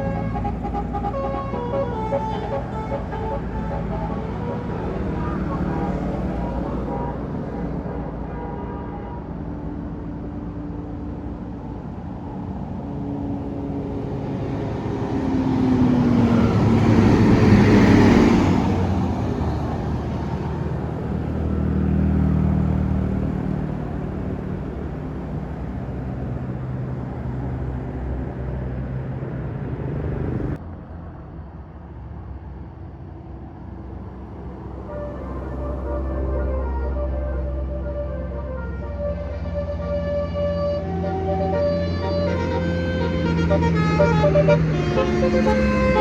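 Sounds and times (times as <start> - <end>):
bus driving past: 0.0 - 46.0
heavy engine running: 22.9 - 46.0.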